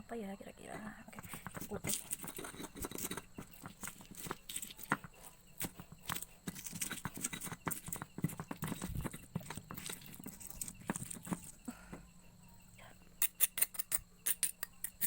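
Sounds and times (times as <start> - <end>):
spoon scraping on a plate: 1.1 - 11.7
chewing: 1.2 - 11.8.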